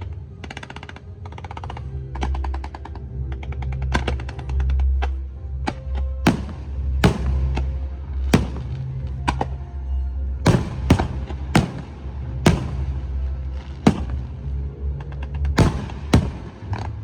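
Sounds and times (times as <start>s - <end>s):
low rumble: 6.2s - 17.0s
fireworks bursting: 6.3s - 9.4s, 10.5s - 14.6s, 15.6s - 17.0s.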